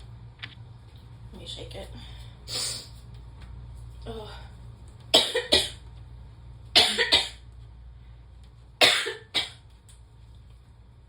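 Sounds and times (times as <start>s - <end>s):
woman coughing: 5.2s - 5.8s, 6.8s - 7.4s, 8.8s - 9.6s.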